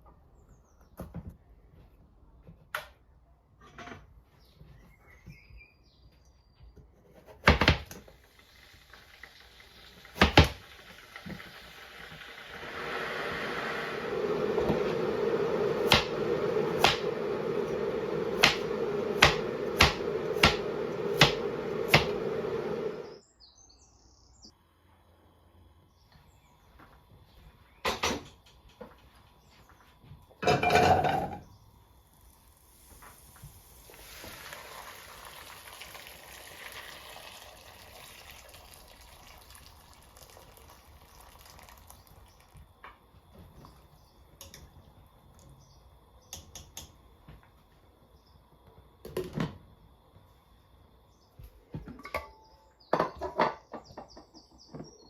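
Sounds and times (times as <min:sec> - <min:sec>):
dishes and cupboard doors clattering: 0:30.4 - 0:31.4, 0:51.8 - 0:54.2.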